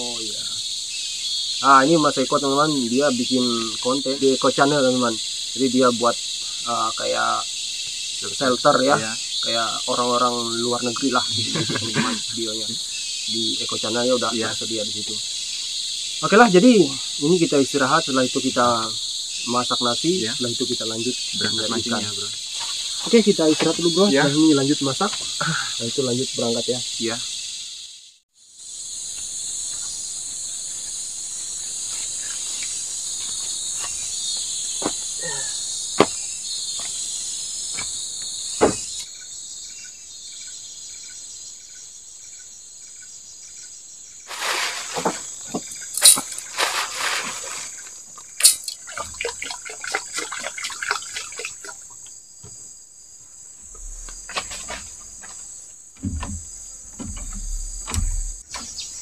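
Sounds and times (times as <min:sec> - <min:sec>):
forest insects buzzing: 0:00.0 - 0:59.0
sharp knocks: 0:36.0 - 0:36.2, 0:38.6 - 0:39.0, 0:56.0 - 0:58.8
clattering: 0:46.0 - 0:47.8.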